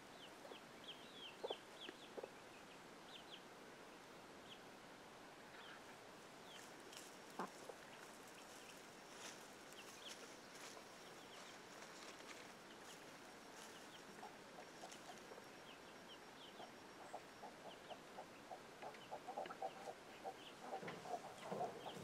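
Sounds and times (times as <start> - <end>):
chickens clucking: 0.2 - 3.4, 5.5 - 22.0
faint high chirps: 5.5 - 22.0.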